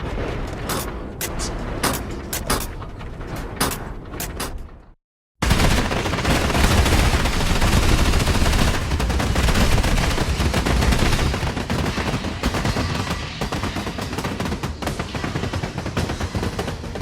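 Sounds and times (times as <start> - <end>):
automatic weapon fire: 5.4 - 13.2.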